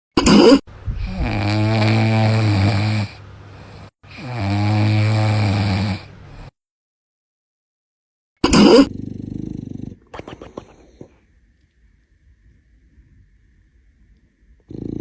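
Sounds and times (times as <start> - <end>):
dog snoring: 0.4 - 6.5, 8.5 - 11.2, 14.6 - 15.0.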